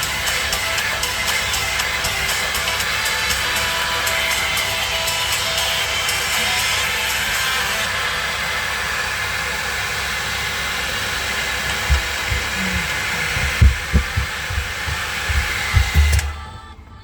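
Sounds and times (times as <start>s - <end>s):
hair dryer blowing: 0.0s - 16.5s
low thumps: 11.7s - 16.4s.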